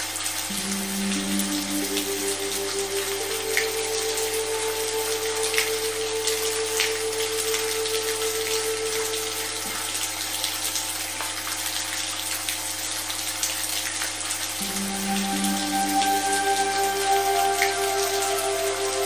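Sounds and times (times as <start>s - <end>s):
steady rain: 0.0s - 19.0s
electronic drone tones: 0.5s - 9.8s, 14.6s - 19.0s.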